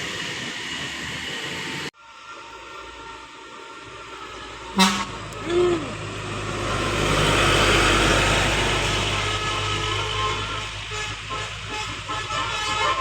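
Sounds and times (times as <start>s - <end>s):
engine and road noise: 0.0s - 13.0s
bus horn toot: 4.1s - 6.3s, 7.7s - 13.0s.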